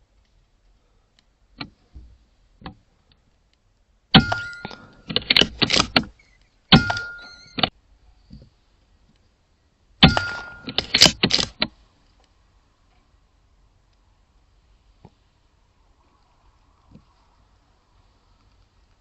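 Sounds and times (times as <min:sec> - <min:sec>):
short metallic ring: 0:04.2 - 0:05.0, 0:06.7 - 0:07.7, 0:10.0 - 0:11.0
air rifle shots: 0:10.0 - 0:11.5
quick clicks: 0:10.1 - 0:11.7.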